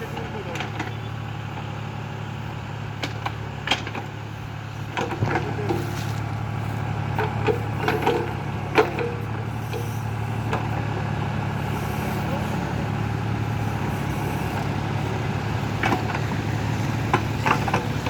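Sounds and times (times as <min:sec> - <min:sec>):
tractor diesel engine running: 0:00.0 - 0:18.0
metallic clanks and knocks: 0:07.2 - 0:09.9, 0:17.0 - 0:18.0.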